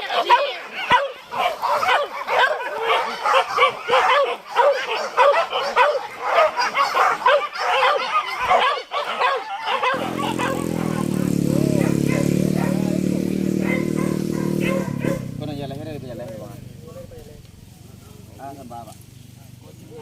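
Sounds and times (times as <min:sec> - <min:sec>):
hunting dogs yelping and baying: 0:00.0 - 0:20.0
engine running: 0:10.0 - 0:20.0.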